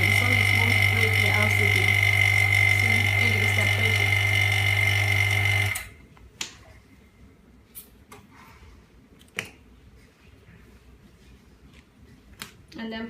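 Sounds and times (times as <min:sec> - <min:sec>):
vacuum pump humming and whining: 0:00.0 - 0:06.0.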